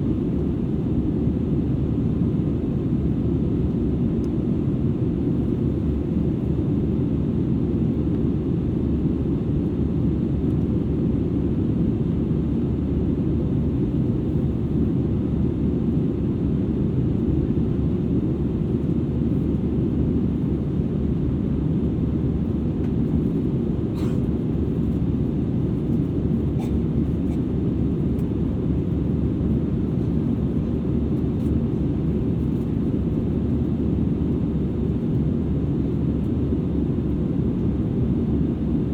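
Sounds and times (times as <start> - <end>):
aircraft cabin roar: 22.8 - 33.6.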